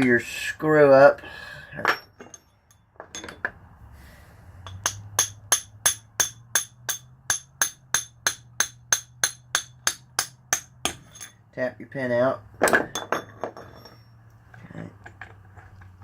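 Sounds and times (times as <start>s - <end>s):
hammer striking metal pin: 4.6s - 11.4s.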